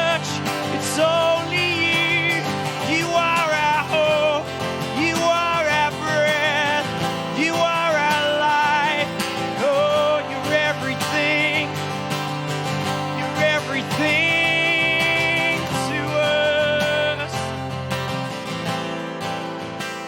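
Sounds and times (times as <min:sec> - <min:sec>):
person singing worship song: 0:00.0 - 0:11.8, 0:13.2 - 0:17.4
acoustic guitar chords: 0:00.0 - 0:20.0.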